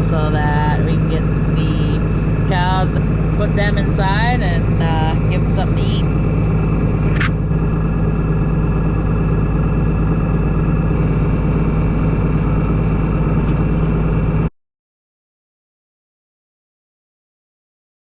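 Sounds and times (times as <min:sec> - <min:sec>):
engine running low drone: 0:00.0 - 0:14.5
short rising squeak: 0:07.0 - 0:07.5.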